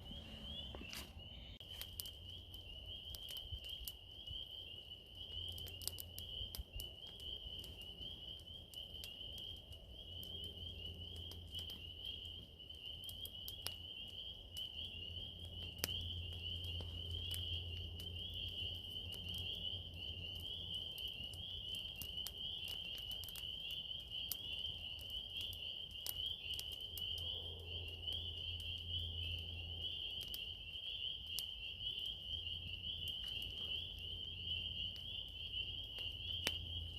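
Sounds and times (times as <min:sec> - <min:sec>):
low rumble: 0:00.0 - 0:01.6
insects chirping: 0:00.0 - 0:36.9.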